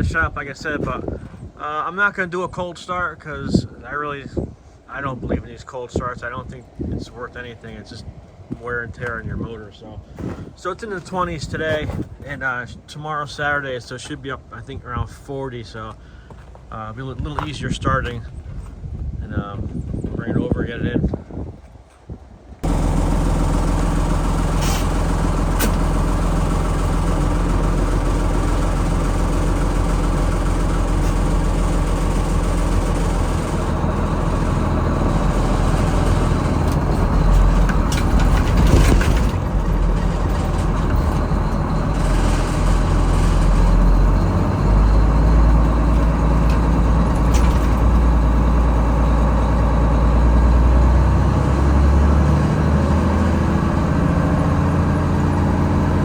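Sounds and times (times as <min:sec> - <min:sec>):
truck engine droning: 0:22.6 - 0:56.0.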